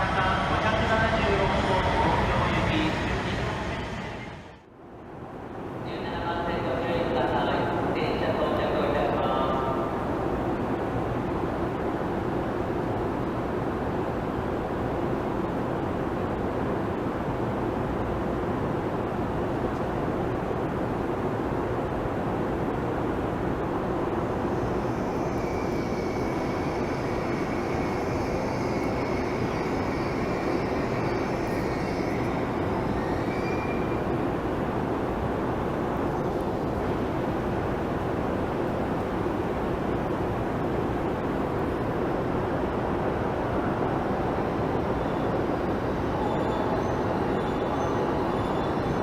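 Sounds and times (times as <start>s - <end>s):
train rumbling: 0.0s - 49.0s
high whine: 10.7s - 49.0s.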